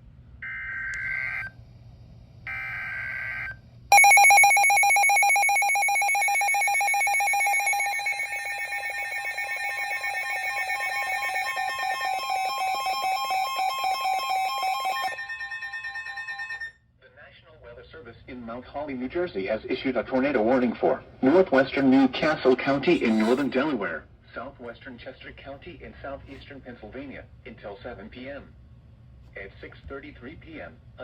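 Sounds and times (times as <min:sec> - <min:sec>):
warbling data bursts: 0:03.9 - 0:15.5
harsh steady attention tone: 0:03.9 - 0:16.7.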